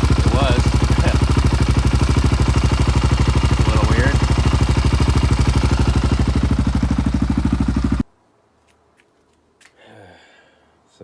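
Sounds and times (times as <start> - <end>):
engine idling: 0.0 - 8.1.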